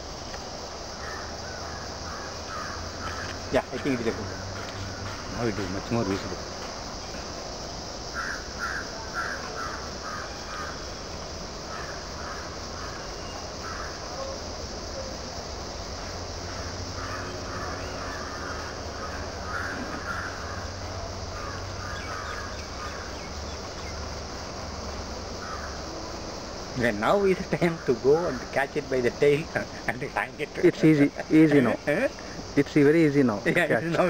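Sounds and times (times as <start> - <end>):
high-pitched insect drone: 0.0 - 34.0
crows cawing: 1.0 - 5.4, 8.0 - 11.0, 11.6 - 14.4, 16.3 - 23.3, 25.4 - 26.0.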